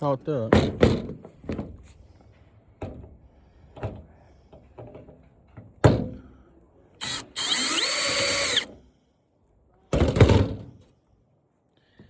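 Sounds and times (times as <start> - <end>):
cordless screw gun whirring: 7.0 - 8.7.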